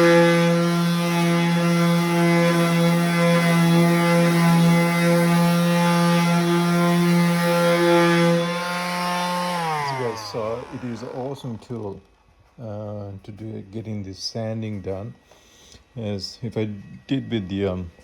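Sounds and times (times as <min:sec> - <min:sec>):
electric sander running: 0:00.0 - 0:12.1
sander winding down: 0:00.0 - 0:12.2.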